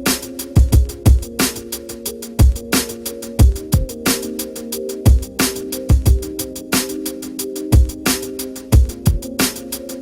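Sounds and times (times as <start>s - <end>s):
hi-hat ticks: 0.0s - 10.0s
deep kick drums: 0.6s - 1.4s, 3.4s - 4.0s, 5.1s - 6.3s, 8.8s - 9.3s.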